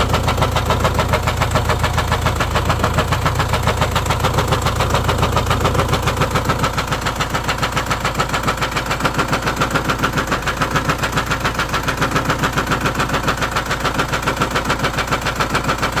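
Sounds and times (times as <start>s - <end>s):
diesel engine knocking: 0.0s - 16.0s.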